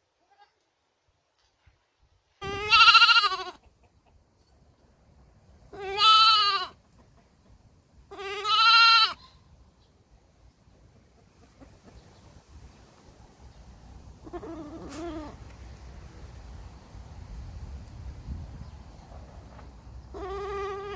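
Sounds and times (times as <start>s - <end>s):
baby goat bleating: 2.4s - 3.6s, 5.7s - 6.8s, 8.1s - 9.4s, 14.2s - 15.4s, 20.1s - 20.9s.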